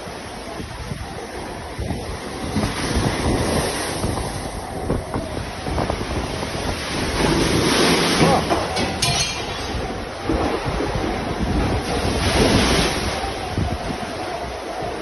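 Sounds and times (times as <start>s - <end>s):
rough surf: 0.0s - 15.0s
wind buffeting microphone: 0.0s - 15.0s.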